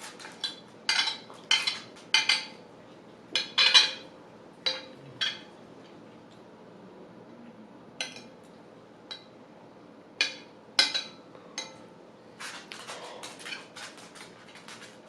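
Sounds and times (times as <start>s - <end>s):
cutlery clinking on a plate: 0.4s - 2.6s, 4.7s - 5.5s.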